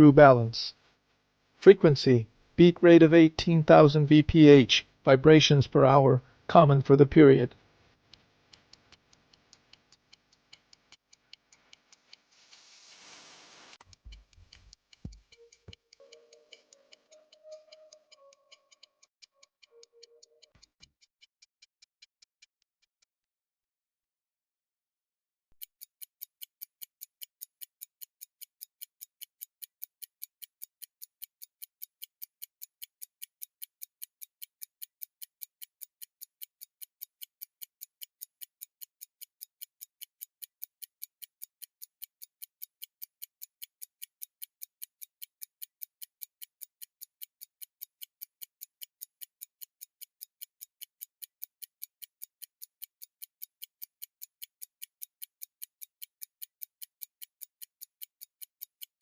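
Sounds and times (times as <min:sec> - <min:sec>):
pocket watch ticking: 0:08.5 - 0:12.2, 0:13.8 - 0:22.5, 0:25.6 - 0:59.0.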